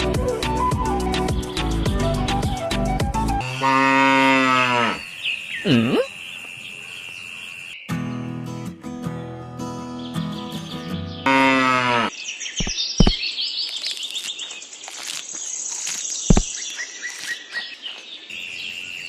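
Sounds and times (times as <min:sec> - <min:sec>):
cow mooing: 0:03.4 - 0:05.0, 0:11.3 - 0:12.1
birds chirping: 0:03.4 - 0:07.9, 0:09.9 - 0:19.0.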